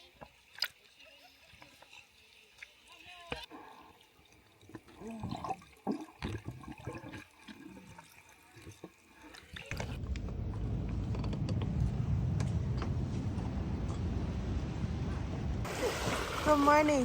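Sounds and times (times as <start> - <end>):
low rushing noise: 10.0 - 16.4
water splashing: 13.8 - 17.0.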